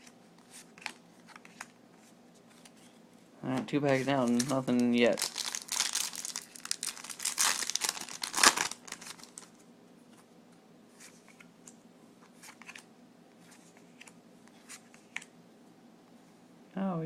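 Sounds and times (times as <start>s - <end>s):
trading cards rustling and clicking: 3.8s - 9.6s
foil wrapper tearing and crinkling: 5.1s - 9.5s.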